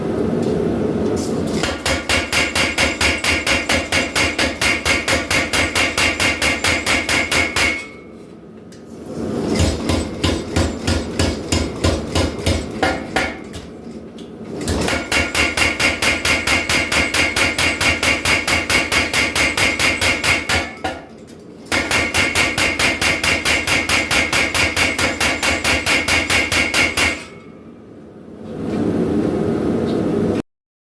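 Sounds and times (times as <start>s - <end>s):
quiet machine hum: 0.0s - 30.4s
power hammer pounding hot steel: 1.5s - 8.1s, 9.2s - 13.8s, 14.6s - 27.5s.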